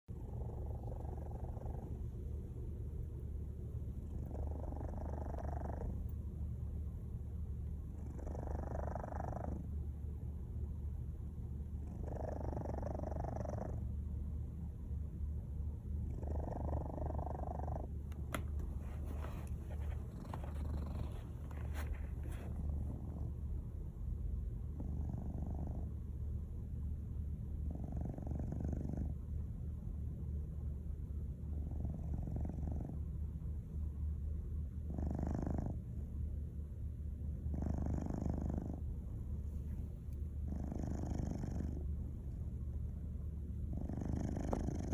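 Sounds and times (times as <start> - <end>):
cat snoring: 0.2 - 2.3, 4.0 - 6.1, 7.9 - 9.7, 11.8 - 13.9, 16.0 - 17.9, 18.8 - 23.3, 24.8 - 25.9, 27.6 - 29.2, 31.5 - 33.0, 34.9 - 35.8, 37.4 - 38.8, 40.4 - 41.9, 43.7 - 44.9.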